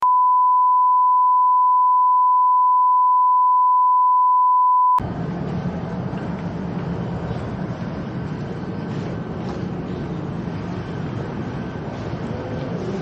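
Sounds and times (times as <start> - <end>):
steady beep tone: 0.0 - 5.0
noisy background rumble: 5.0 - 13.0.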